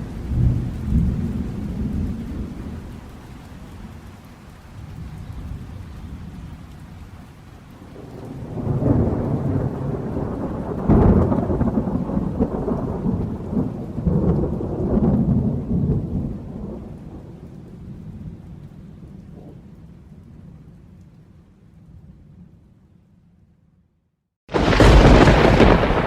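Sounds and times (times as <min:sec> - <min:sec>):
thunder rumbling and cracking: 0:00.0 - 0:03.2, 0:07.9 - 0:21.1, 0:24.5 - 0:26.0
steady rain: 0:00.0 - 0:23.7, 0:24.5 - 0:26.0.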